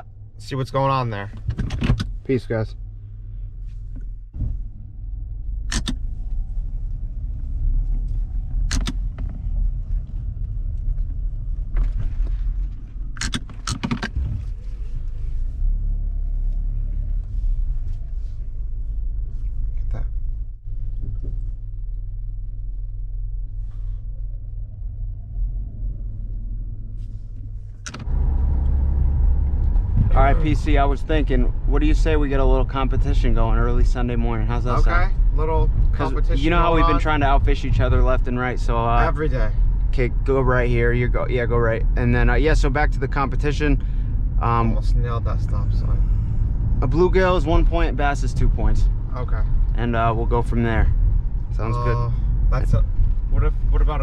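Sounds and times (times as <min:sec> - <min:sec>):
car road and engine rumble: 0:00.0 - 0:54.0.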